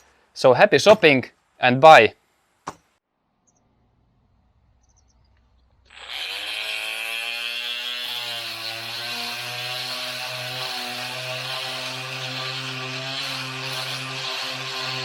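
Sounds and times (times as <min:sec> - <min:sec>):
oscillating multi-tool whining: 0:05.9 - 0:15.0.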